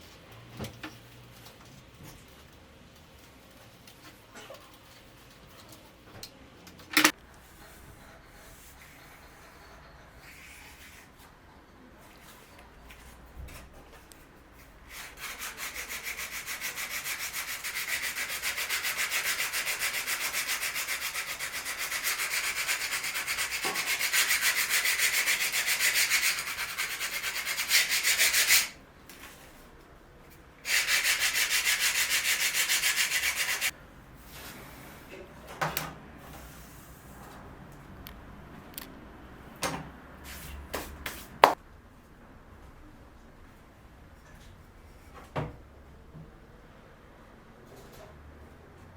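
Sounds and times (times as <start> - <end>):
sandpaper sanding wood by hand: 14.9 - 28.8, 30.6 - 33.7.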